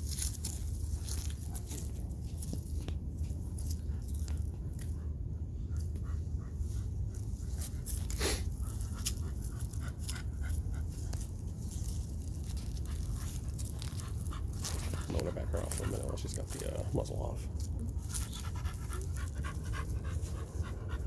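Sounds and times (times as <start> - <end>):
low steady rumble: 0.0 - 21.0
dog panting: 0.6 - 21.0.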